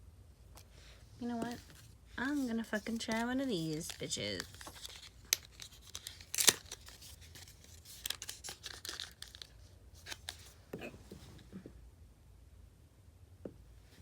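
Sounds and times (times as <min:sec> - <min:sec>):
packaging crinkling and tearing: 0:01.4 - 0:10.6.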